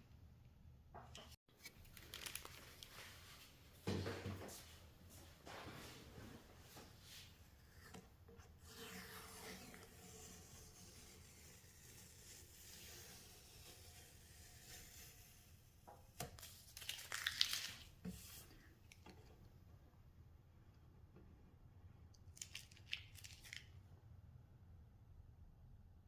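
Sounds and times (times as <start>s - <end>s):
faint rustling and crinkling: 1.5s - 8.6s
crackling and tearing: 1.6s - 2.9s, 16.5s - 17.9s.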